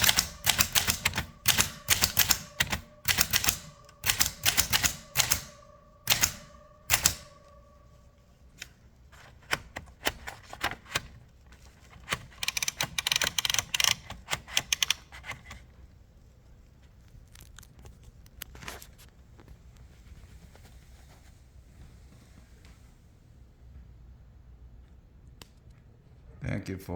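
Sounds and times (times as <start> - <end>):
typewriter keys striking: 0.0 - 7.4, 12.0 - 15.6
typewriter margin bell ringing: 0.0 - 7.5.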